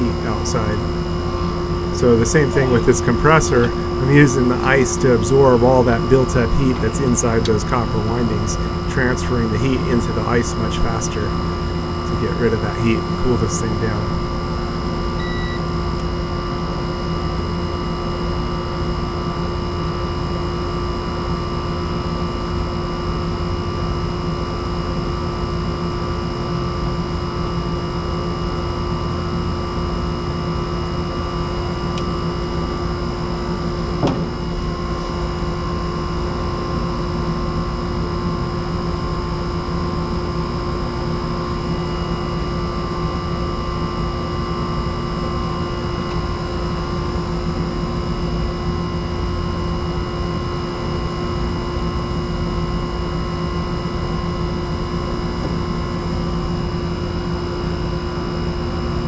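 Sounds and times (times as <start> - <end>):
air conditioner hum: 0.0 - 15.6.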